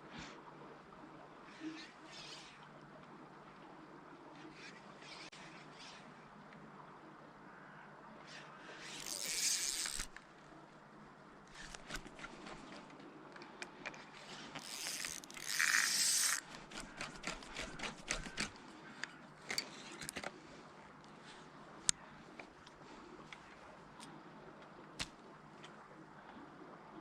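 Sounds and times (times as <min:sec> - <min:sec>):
fishing line hissing off spool: 0:08.6 - 0:10.2, 0:14.4 - 0:18.5
fishing reel clicks and scrapes: 0:08.8 - 0:10.2, 0:11.6 - 0:12.6, 0:14.2 - 0:18.6.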